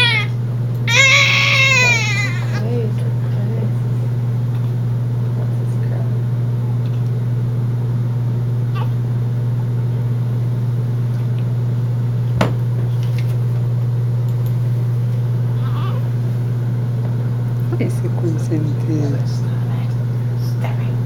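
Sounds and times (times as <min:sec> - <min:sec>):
baby whimpering: 0:00.0 - 0:02.7, 0:08.7 - 0:09.0, 0:15.5 - 0:16.2
steady low hum: 0:00.0 - 0:21.0.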